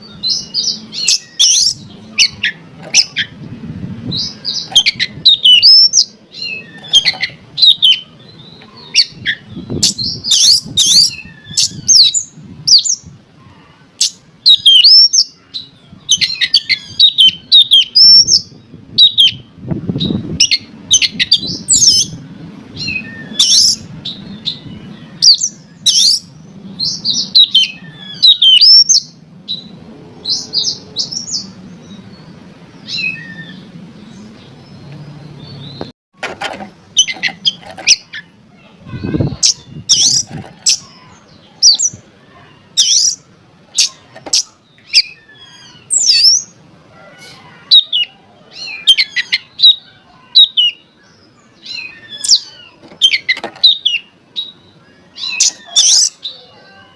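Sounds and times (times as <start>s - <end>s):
bird singing whistles and chirps: 0.0s - 3.4s, 4.1s - 13.1s, 14.0s - 22.2s, 22.8s - 29.7s, 32.8s - 33.7s, 51.6s - 56.5s.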